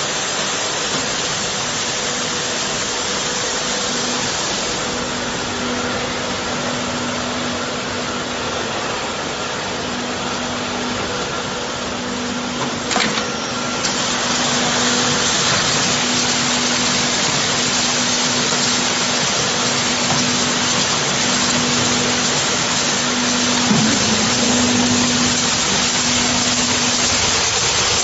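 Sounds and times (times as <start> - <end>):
machine motor hum: 0.0 - 28.0
water spray hissing: 13.9 - 28.0.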